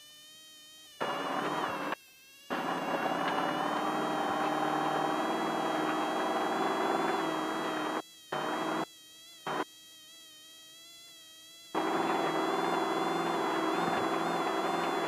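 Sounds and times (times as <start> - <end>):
race engine buzzing drone: 1.0 - 8.9, 11.8 - 15.0.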